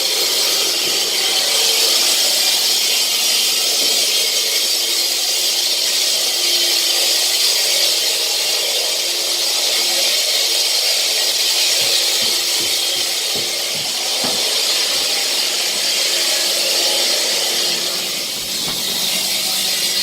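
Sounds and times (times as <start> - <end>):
power tool grinding concrete: 0.0 - 20.0
knocks: 11.7 - 15.3, 18.2 - 19.9.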